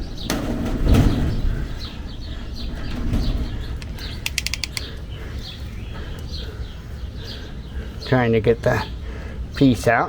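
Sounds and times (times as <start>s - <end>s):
pop-rivet gun clicks: 3.8s - 5.0s.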